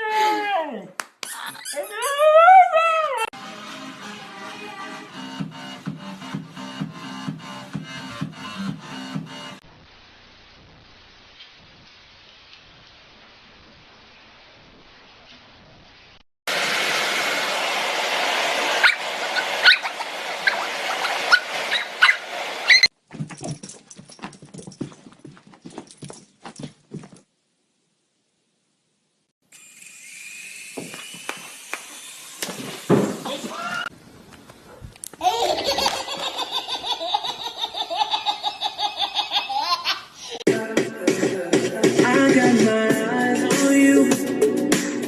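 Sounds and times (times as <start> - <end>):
dog crying high-pitched: 0.0 - 3.3, 18.8 - 22.9
person laughing hard: 35.2 - 40.4.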